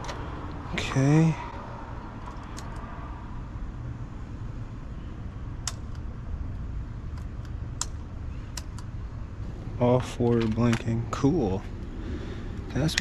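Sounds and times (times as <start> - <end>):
low background hum: 0.0 - 13.0
sharp clicks: 5.6 - 6.1, 7.1 - 8.9.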